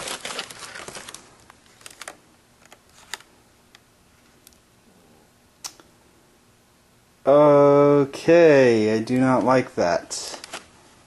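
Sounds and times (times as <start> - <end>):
packing material rustling: 0.0 - 3.3, 10.2 - 10.7.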